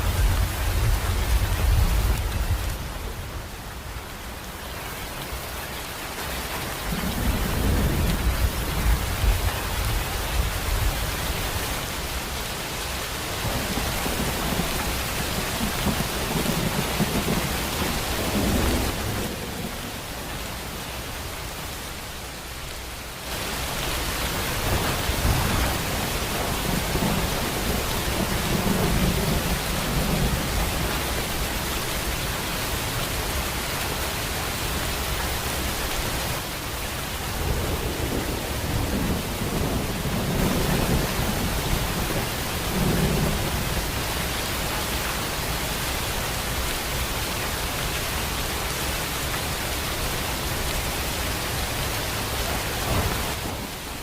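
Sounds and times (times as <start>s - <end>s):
heavy rain hissing: 0.0s - 54.0s
thunder rumbling: 6.9s - 11.4s, 13.4s - 20.7s, 24.0s - 31.8s, 37.2s - 44.3s, 52.2s - 54.0s.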